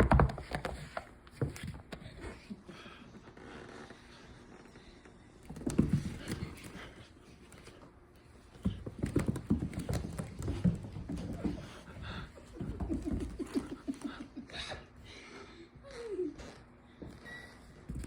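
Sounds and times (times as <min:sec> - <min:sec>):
cat paws tapping and scuffling: 0:00.0 - 0:02.9, 0:04.8 - 0:14.4.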